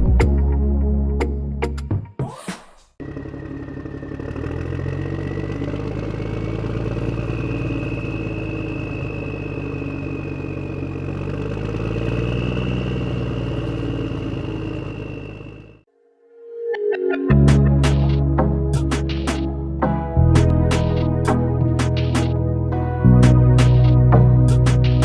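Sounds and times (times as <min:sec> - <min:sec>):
tractor engine running: 0:03.0 - 0:15.9, 0:17.5 - 0:22.4.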